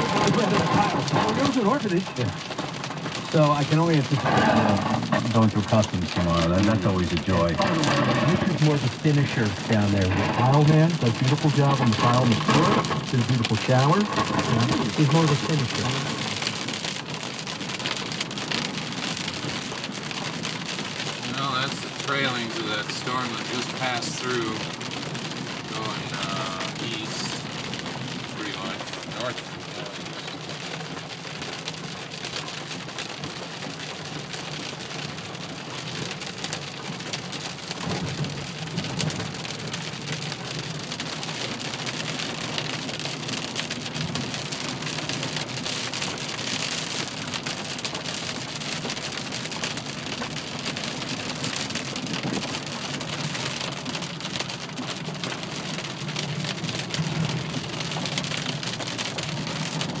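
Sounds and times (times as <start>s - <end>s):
car driving hum: 0.0s - 34.0s
rain hitting car roof: 0.0s - 60.0s.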